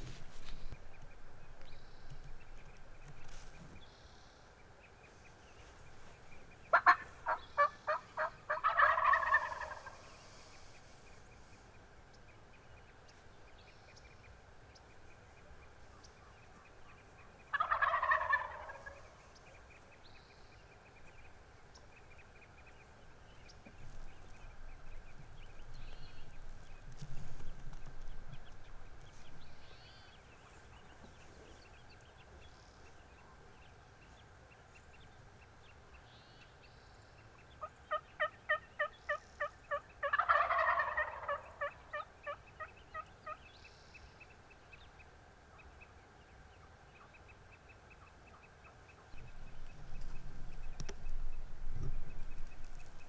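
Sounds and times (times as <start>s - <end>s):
turkey gobbling: 6.7s - 10.3s, 15.9s - 19.4s, 37.4s - 43.4s.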